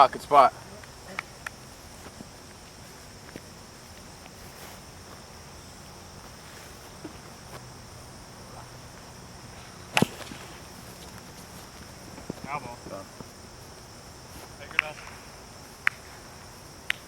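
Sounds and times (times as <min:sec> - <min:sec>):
insects chirring: 0:00.0 - 0:17.0
bat striking ball: 0:08.6 - 0:10.8.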